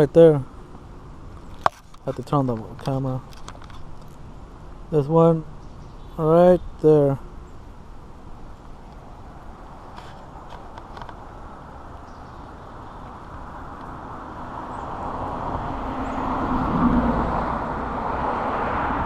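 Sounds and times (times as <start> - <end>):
vehicle passing by: 12.2 - 19.0.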